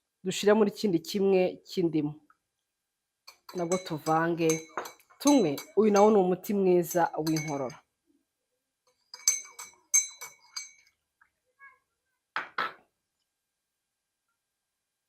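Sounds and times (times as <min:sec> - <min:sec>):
spoon clinking against cup: 0:03.3 - 0:06.2, 0:06.9 - 0:07.9, 0:08.9 - 0:11.0.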